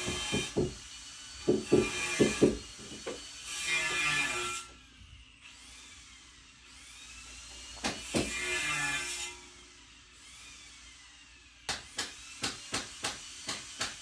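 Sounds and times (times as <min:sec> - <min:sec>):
sharp knocks on wood: 0:00.0 - 0:00.8, 0:01.5 - 0:03.2, 0:07.8 - 0:08.3
sawing wood: 0:00.0 - 0:04.8, 0:06.9 - 0:09.5, 0:11.7 - 0:14.0.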